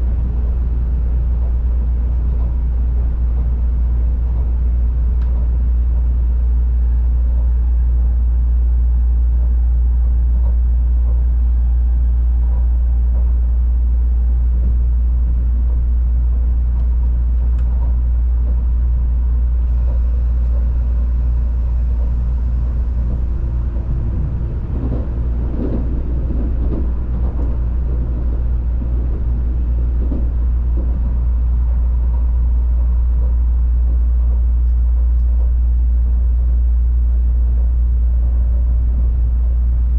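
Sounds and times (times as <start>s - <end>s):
train rumble and rolling noise: 0.0s - 39.9s
short knocks and rattles: 21.7s - 34.5s.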